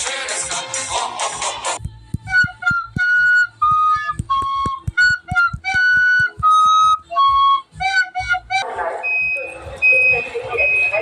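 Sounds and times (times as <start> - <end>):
flute-like melody: 2.1 - 11.0.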